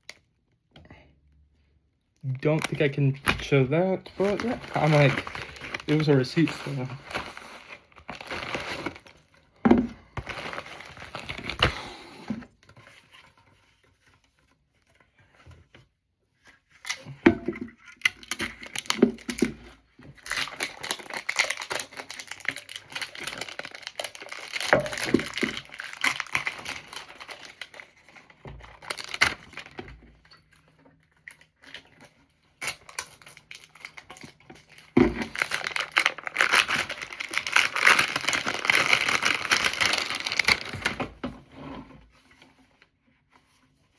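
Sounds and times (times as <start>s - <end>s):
paper crinkling and tearing: 2.5s - 9.2s, 10.1s - 12.1s, 20.2s - 29.8s, 31.4s - 41.0s.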